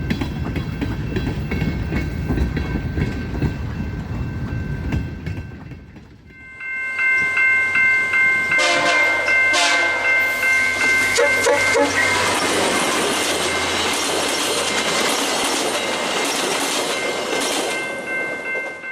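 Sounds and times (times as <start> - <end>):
train wheels clattering on rail: 0.0 - 6.5, 10.8 - 18.9
locomotive air horn: 8.6 - 10.2, 11.2 - 12.2.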